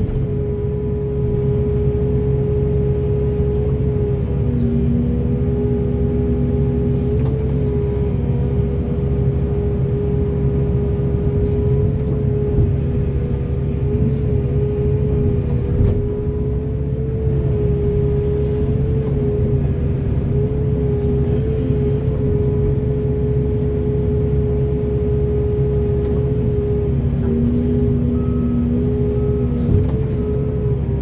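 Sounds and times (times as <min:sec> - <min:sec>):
excavator engine running: 0:00.0 - 0:31.0
high-pitched machine whine: 0:27.4 - 0:30.6.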